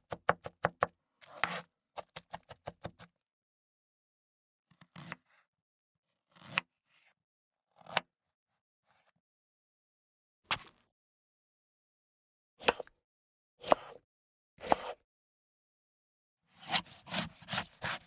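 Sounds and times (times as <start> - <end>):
knife slicing on cutting board: 14.6 - 14.9, 16.6 - 18.0.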